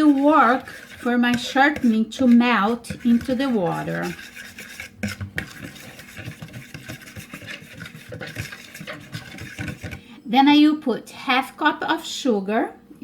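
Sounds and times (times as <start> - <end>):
utensil scraping and clinking bowl: 0.0 - 10.1.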